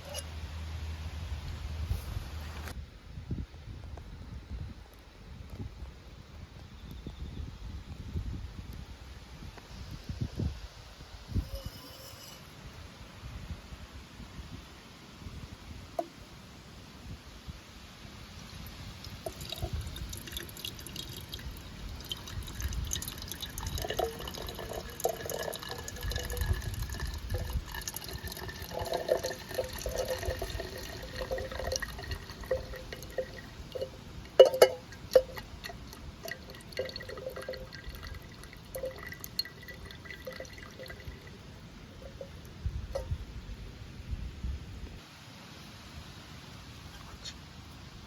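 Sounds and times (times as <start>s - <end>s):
liquid trickling and dripping: 18.6s - 43.3s.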